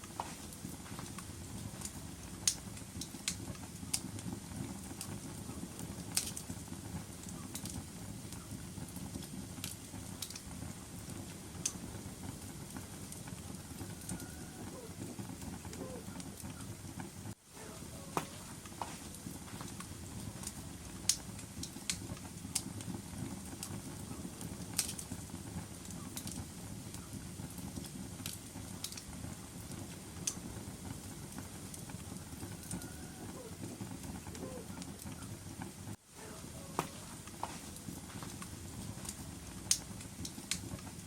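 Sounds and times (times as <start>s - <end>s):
fire crackling and popping: 0.0s - 41.0s
fire flames rushing: 0.0s - 41.0s.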